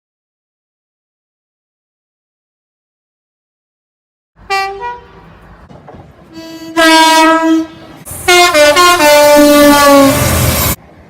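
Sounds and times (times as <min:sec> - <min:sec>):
train horn toots and blasts: 0:04.4 - 0:05.3, 0:06.3 - 0:10.8.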